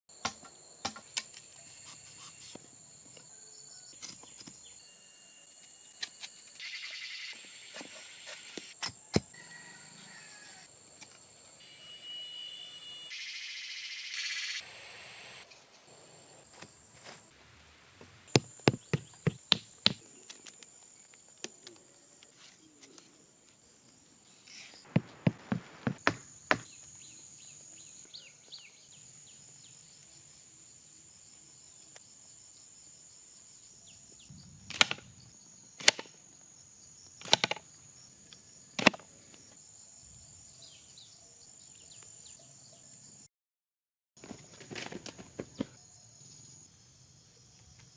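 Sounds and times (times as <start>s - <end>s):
high-pitched insect drone: 6.5s - 8.7s, 11.6s - 15.5s
sharp knocks or chops: 18.4s - 20.0s, 24.9s - 26.7s.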